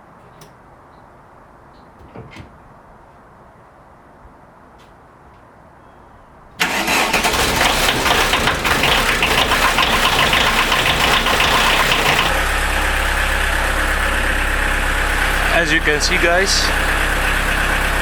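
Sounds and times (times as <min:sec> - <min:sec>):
car engine starting and idling: 0:06.6 - 0:18.0.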